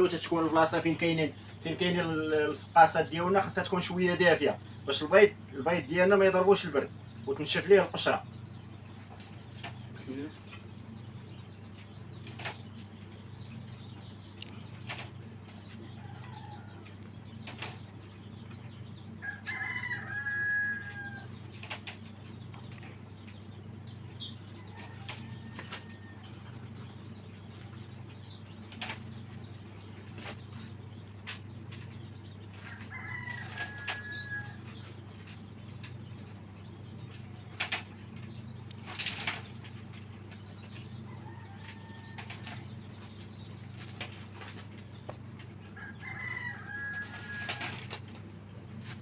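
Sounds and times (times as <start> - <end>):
low machine hum: 0.0 - 49.0
rooster crowing: 19.2 - 21.3, 24.7 - 26.4, 32.7 - 34.7, 45.8 - 47.8.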